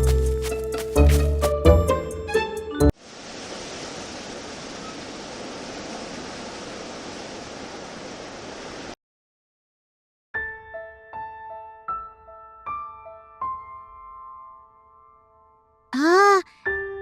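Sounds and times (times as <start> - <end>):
soft piano music: 10.4 - 15.9, 16.5 - 17.0.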